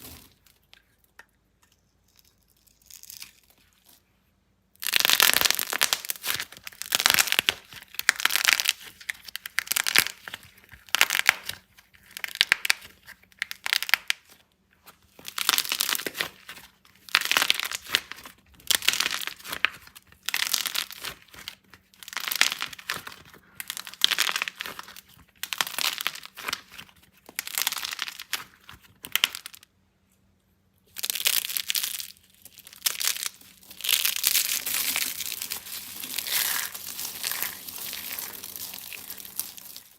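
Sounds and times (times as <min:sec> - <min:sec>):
dry soap being cut and crumbled: 0:00.0 - 0:04.0, 0:30.9 - 0:39.9.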